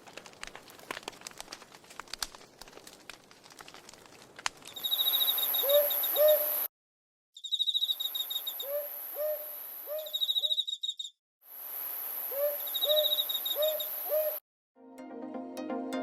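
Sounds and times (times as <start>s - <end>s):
low hooting bird calls: 4.8s - 6.7s, 7.4s - 11.1s, 12.3s - 14.4s.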